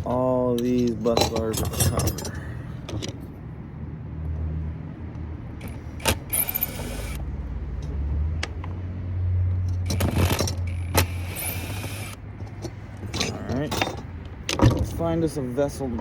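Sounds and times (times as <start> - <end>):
metal scrap rattling and scraping: 0.0 - 3.3, 5.6 - 7.2, 9.7 - 15.0
sharp clicks: 5.6 - 7.2, 9.7 - 12.2.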